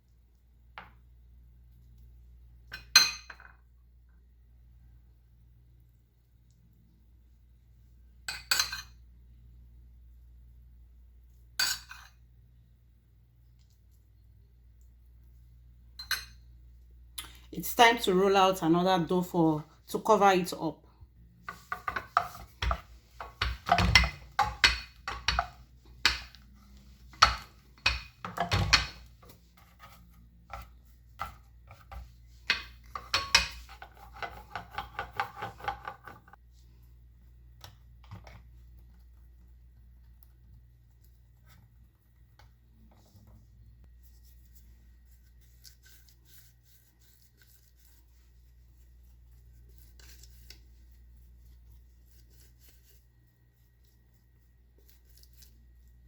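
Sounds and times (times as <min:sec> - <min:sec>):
kitchenware clatter: 0:02.7 - 0:03.7, 0:08.3 - 0:09.0, 0:11.6 - 0:12.2, 0:16.0 - 0:16.5, 0:21.5 - 0:29.4, 0:31.2 - 0:36.4
rolling pin rolling dough: 0:21.4 - 0:36.6.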